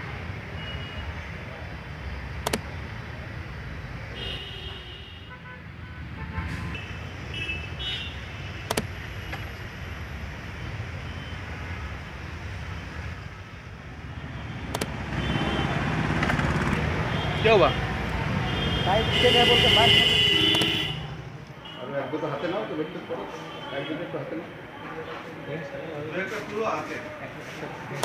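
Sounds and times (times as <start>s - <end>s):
traffic rumble: 0.0s - 28.0s
sharp clicks: 2.4s - 2.8s, 8.6s - 9.4s, 14.6s - 15.0s, 20.5s - 20.8s
car horn toots: 14.4s - 15.9s, 18.5s - 21.8s.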